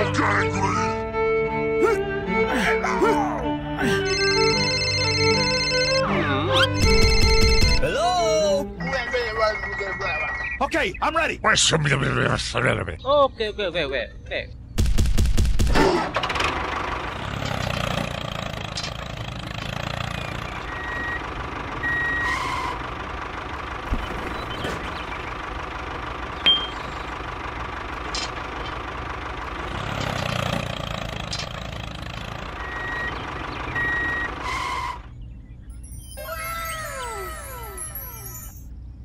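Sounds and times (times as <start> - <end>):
falling chirps: 6.6 - 11.1, 20.0 - 27.3, 32.1 - 39.0
short high beeps: 8.8 - 10.7, 26.5 - 26.8
small vehicle engine running: 15.8 - 39.0.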